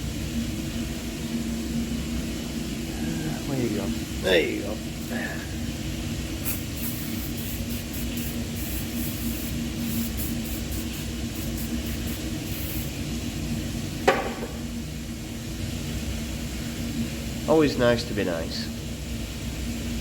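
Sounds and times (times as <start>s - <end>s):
low machinery hum: 0.0s - 20.0s
sharp knock: 14.1s - 14.6s.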